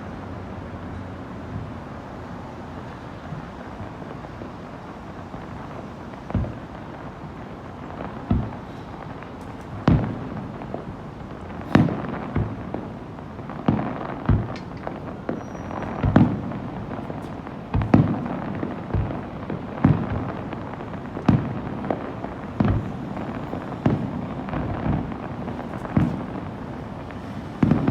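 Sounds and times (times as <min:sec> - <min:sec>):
fireworks booming: 0:01.3 - 0:27.9.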